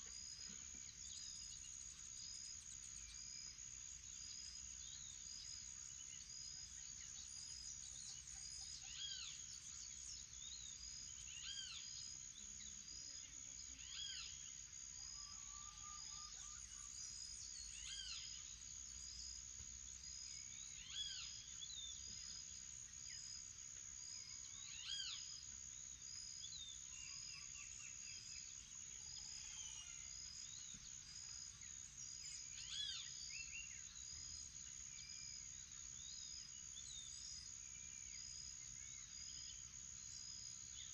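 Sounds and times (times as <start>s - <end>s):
insect chirping pulse: 0.0s - 40.9s.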